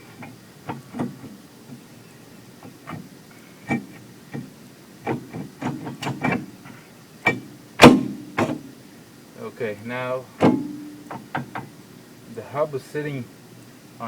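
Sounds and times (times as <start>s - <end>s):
heavy metal clunk: 0.0s - 8.8s, 10.3s - 12.0s
metal clinks and knocks: 7.2s - 8.8s, 10.4s - 11.7s.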